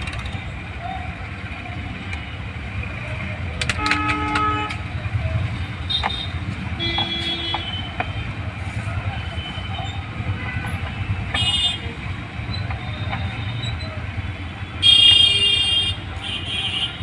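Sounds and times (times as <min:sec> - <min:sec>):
road traffic rumbling: 0:00.0 - 0:17.0
vehicle horn: 0:03.8 - 0:04.9, 0:05.9 - 0:07.9, 0:14.8 - 0:17.0.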